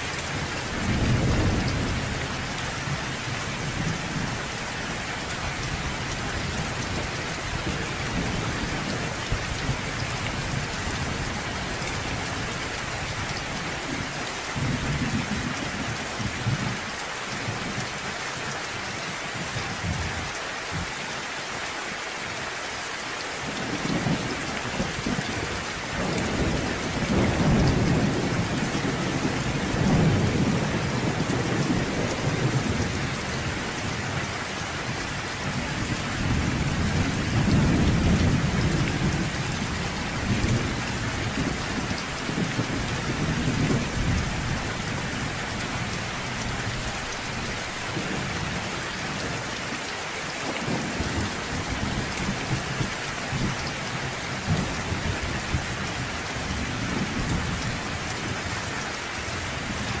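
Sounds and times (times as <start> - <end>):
thunder rumbling: 0.0 - 16.8, 23.5 - 34.2, 34.8 - 49.2
rain falling: 0.0 - 60.0.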